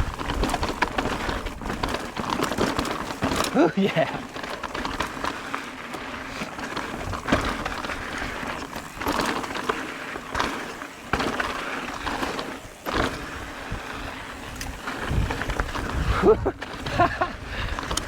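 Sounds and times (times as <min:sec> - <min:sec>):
bike clattering over bumps: 0:00.0 - 0:18.0
bike tyres crunching on dirt: 0:00.0 - 0:18.0.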